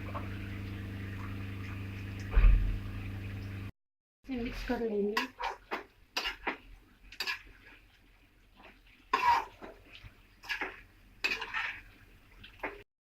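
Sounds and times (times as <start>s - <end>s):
spoon scraping a cooking pan: 5.2s - 7.8s, 8.6s - 11.9s.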